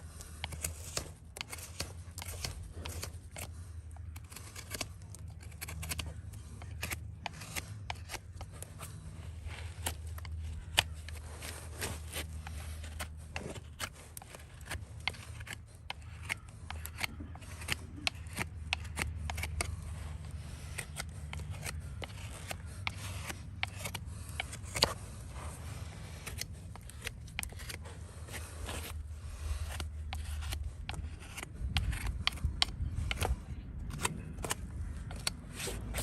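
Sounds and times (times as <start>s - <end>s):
hoof cutting and scraping: 0.0s - 36.0s
steady low hum: 0.0s - 36.0s
hand tools clicking on hoof: 0.1s - 36.0s.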